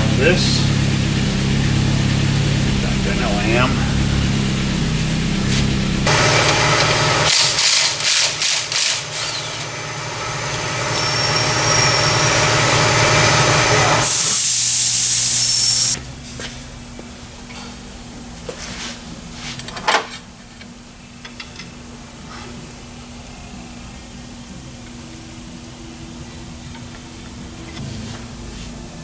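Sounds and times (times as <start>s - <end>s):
tool running: 0.0s - 16.0s
loud hiss: 10.8s - 16.0s.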